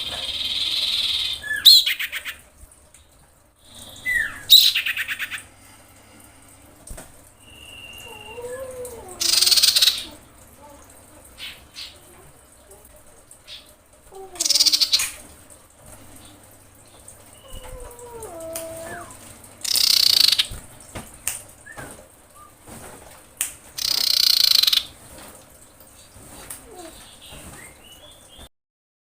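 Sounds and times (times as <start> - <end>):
bird whistled notes: 7.4 - 8.3
bird harsh rasping calls: 19.6 - 20.5, 23.8 - 24.9.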